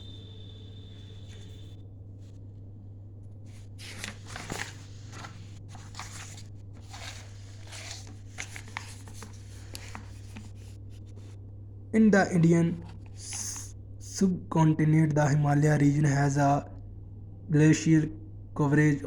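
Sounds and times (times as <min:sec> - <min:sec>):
low electrical hum: 0:00.0 - 0:19.0
paper rustling and scratching: 0:03.4 - 0:11.4, 0:12.7 - 0:13.6.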